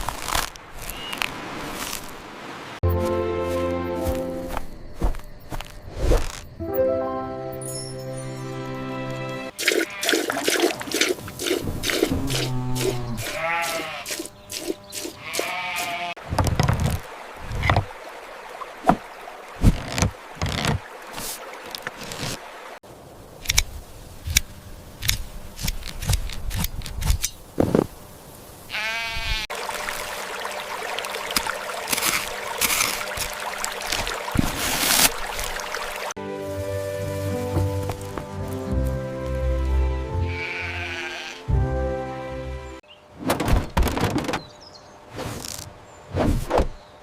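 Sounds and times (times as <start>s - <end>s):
sheep bleating: 12.6s - 14.2s, 15.2s - 16.2s, 28.7s - 29.5s, 40.2s - 41.5s.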